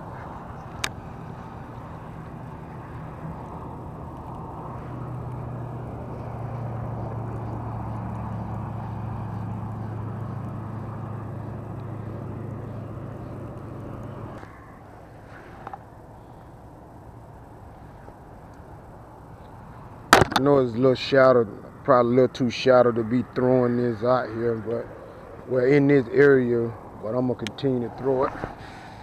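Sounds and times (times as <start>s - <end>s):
low engine hum: 0.0s - 29.0s.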